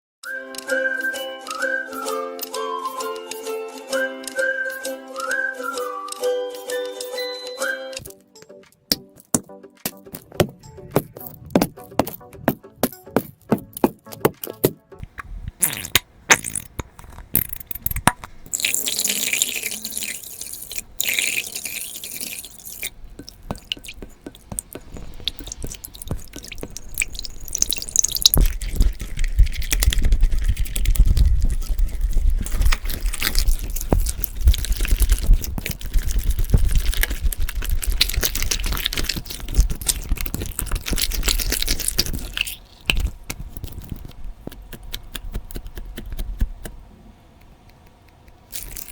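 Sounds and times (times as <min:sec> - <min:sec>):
hands squishing slime: 0:15.0 - 0:46.8, 0:47.4 - 0:48.9
slime crackling: 0:15.0 - 0:46.8, 0:47.4 - 0:48.9.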